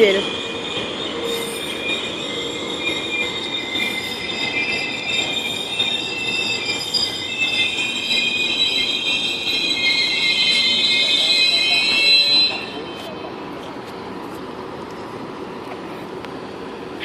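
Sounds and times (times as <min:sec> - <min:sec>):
train wheels squealing: 0:00.0 - 0:14.2
rumble of train coaches: 0:00.0 - 0:17.0.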